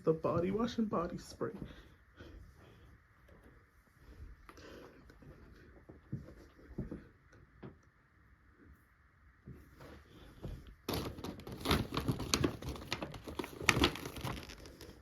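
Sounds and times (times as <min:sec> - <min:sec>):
gift bag crinkling and rustling: 0:10.9 - 0:15.0.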